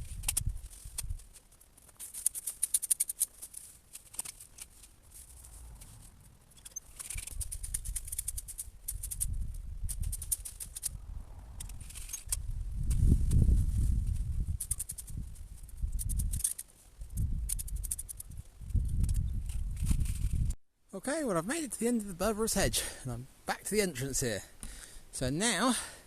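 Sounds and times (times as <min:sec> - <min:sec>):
wind on microphone: 0:00.0 - 0:01.3, 0:07.1 - 0:20.6
dry twigs crackling and rustling: 0:00.0 - 0:11.0.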